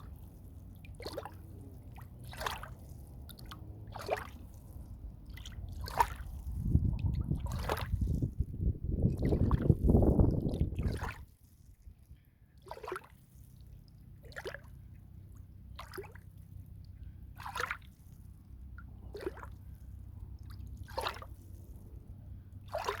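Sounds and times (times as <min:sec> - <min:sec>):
steady low rumble: 0:00.0 - 0:11.2, 0:18.1 - 0:22.8
water splashing in strokes: 0:00.0 - 0:11.8, 0:12.6 - 0:14.8, 0:15.8 - 0:16.4, 0:17.4 - 0:18.2, 0:19.0 - 0:21.9, 0:22.7 - 0:23.0.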